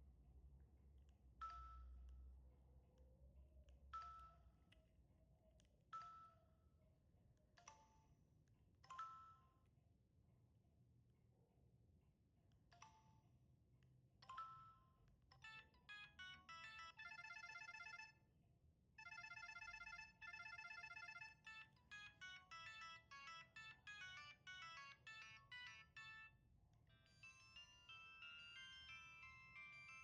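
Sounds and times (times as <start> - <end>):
phone ringtone melody: 15.4 - 18.2, 19.0 - 30.0.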